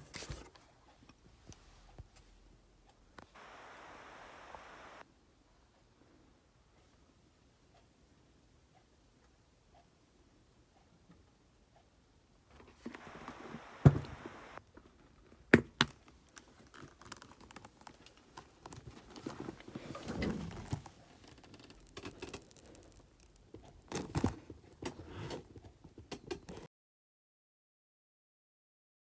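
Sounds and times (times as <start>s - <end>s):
rustling: 12.5s - 25.8s
handling clicks and knocks: 12.5s - 26.7s.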